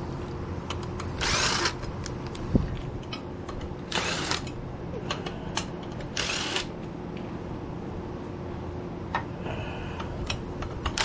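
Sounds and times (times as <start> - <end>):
impact wrench bursts: 1.2 - 1.8, 3.9 - 4.5, 6.0 - 6.7.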